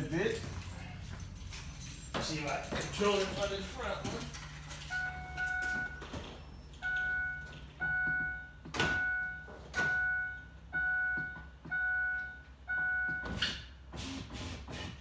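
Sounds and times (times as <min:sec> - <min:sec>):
electronic warning chime: 0:04.9 - 0:13.3.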